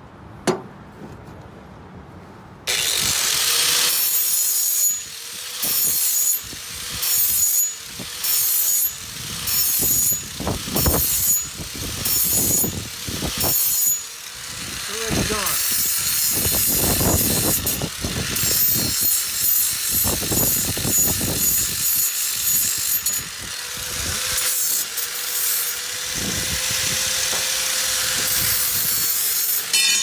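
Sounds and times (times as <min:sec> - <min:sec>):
metal blade being sharpened: 0:29.5 - 0:30.0.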